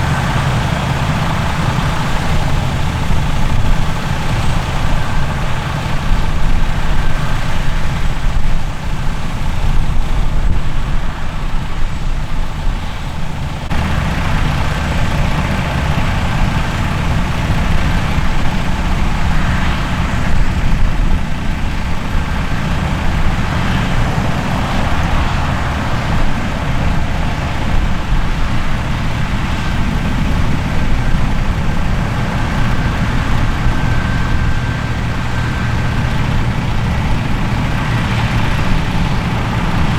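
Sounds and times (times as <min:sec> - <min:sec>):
diesel machinery engine drone: 0:00.0 - 0:39.9.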